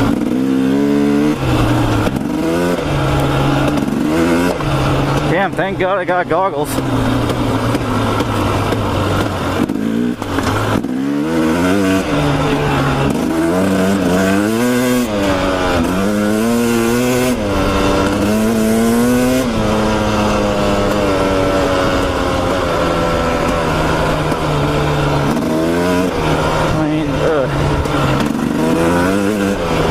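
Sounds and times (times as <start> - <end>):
motorcycle engine revving: 0.0 - 29.9.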